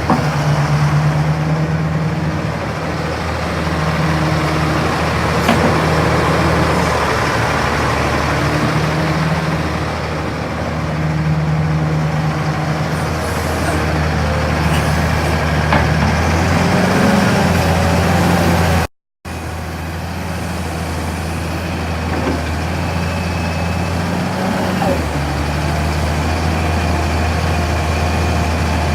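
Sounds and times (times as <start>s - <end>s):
excavator diesel engine running: 0.0s - 28.9s.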